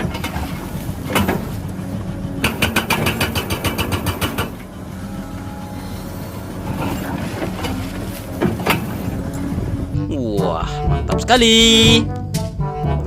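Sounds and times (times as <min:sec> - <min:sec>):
rapid hammering clicks: 0:02.4 - 0:04.7.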